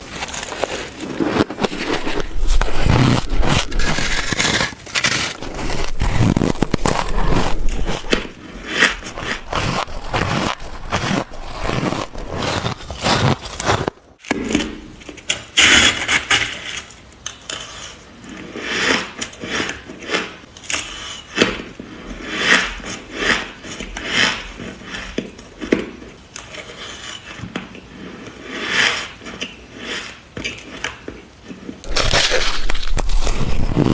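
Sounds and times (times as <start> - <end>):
ice crunched between teeth: 0.0 - 8.4, 9.0 - 14.2, 31.9 - 33.9.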